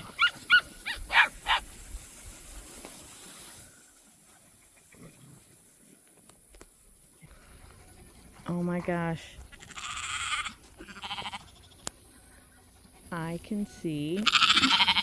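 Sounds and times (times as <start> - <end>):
puppy yipping: 0.0 - 1.6.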